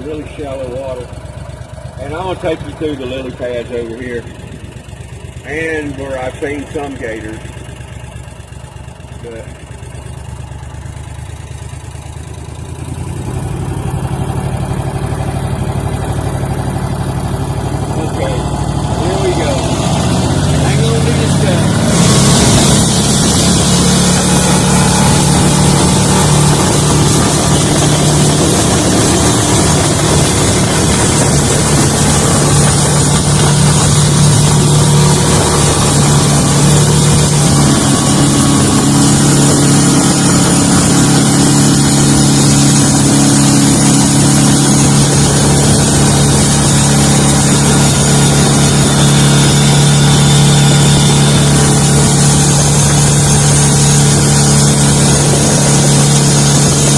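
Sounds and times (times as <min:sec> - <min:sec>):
boat motor running: 0:00.0 - 0:56.9
rush of wind and water: 0:19.2 - 0:56.9.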